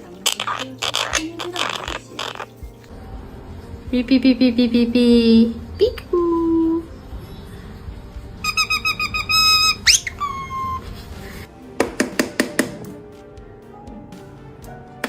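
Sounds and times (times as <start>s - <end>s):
parrot whistling: 0.2s - 2.7s, 8.4s - 11.4s.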